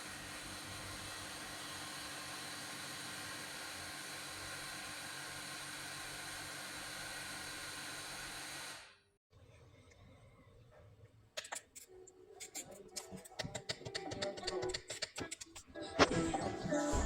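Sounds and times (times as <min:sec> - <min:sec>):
hot-air blower hissing: 0:00.0 - 0:08.9.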